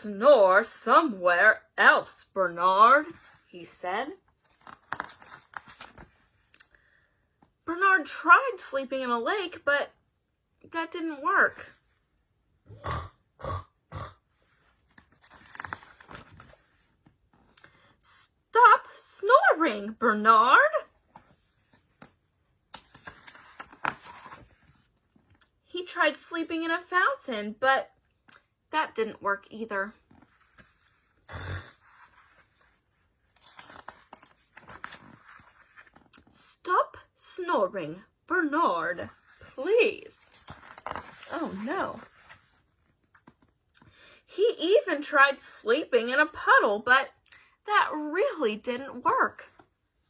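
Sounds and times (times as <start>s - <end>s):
paper rustling and crinkling: 4.2s - 6.6s, 14.6s - 17.6s, 21.0s - 25.4s, 31.8s - 36.3s, 40.3s - 43.6s
woman imitating snoring: 31.3s - 31.8s.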